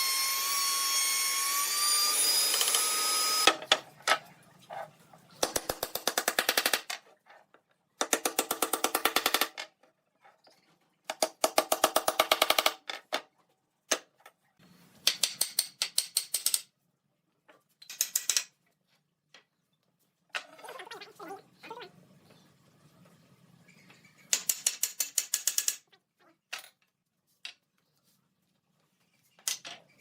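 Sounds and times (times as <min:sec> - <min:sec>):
power tool rapid impacts: 0:01.6 - 0:03.6.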